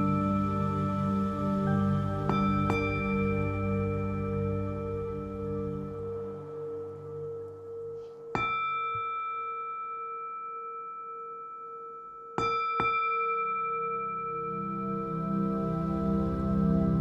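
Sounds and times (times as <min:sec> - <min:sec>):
soft low pad: 0:00.0 - 0:10.2, 0:13.1 - 0:17.0
bell-like chime ringing: 0:02.3 - 0:15.7.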